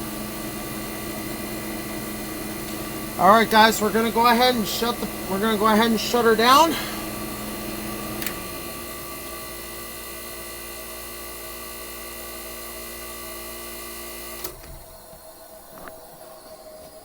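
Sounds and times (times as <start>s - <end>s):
air conditioner humming: 0.0s - 10.6s.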